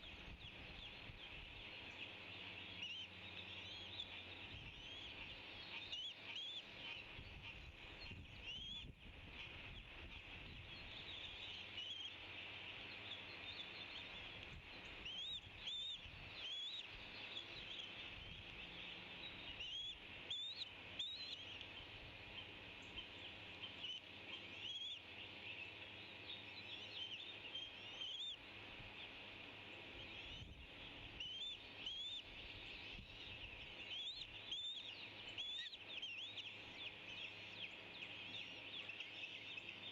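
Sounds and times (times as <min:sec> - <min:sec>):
steady background hiss: 0:00.0 - 0:39.9
eagle chick begging chirps: 0:26.3 - 0:28.4, 0:29.9 - 0:39.9.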